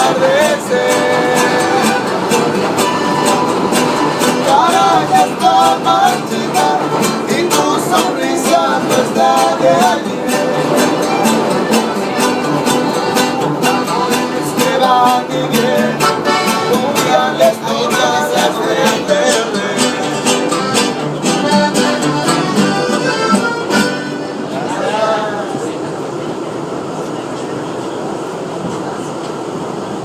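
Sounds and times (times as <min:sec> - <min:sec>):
strummed acoustic guitars: 0:00.0 - 0:25.4.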